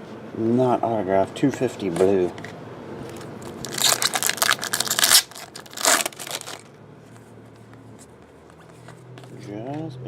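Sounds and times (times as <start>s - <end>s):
foil wrapper tearing and crinkling: 3.4s - 6.7s.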